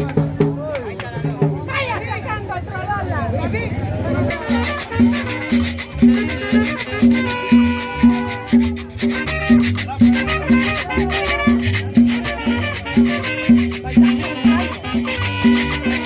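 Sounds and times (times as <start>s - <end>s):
salsa music with dance beat: 4.3s - 16.0s.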